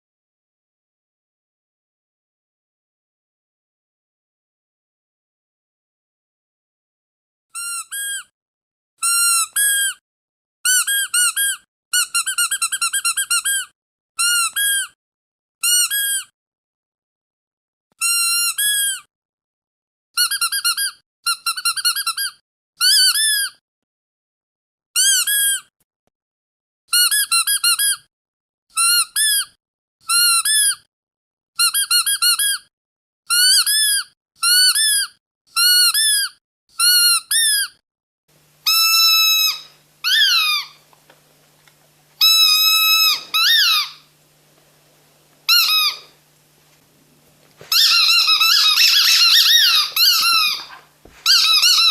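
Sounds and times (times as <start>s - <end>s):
squeaky dog toy squeaking: 7.6s - 8.3s, 9.0s - 9.9s, 15.6s - 16.3s, 18.0s - 19.0s, 20.2s - 23.6s, 25.0s - 25.7s, 33.3s - 37.8s, 38.6s - 40.8s, 42.2s - 44.1s, 45.5s - 46.1s, 47.5s - 51.9s
faint hum: 38.3s - 51.9s.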